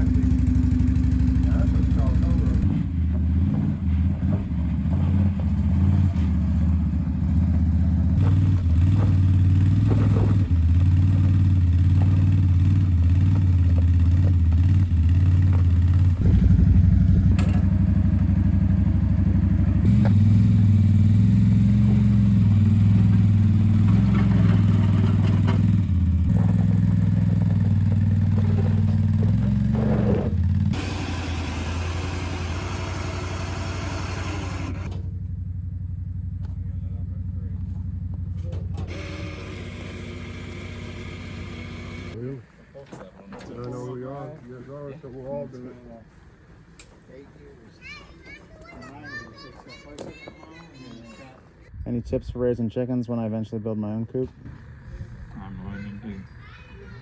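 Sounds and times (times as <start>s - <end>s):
engine running: 0.0s - 42.4s.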